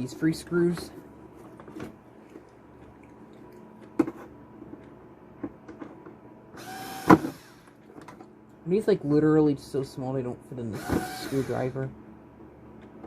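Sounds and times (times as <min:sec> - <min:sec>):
power screwdriver whirring: 0:06.6 - 0:07.7, 0:10.8 - 0:11.7.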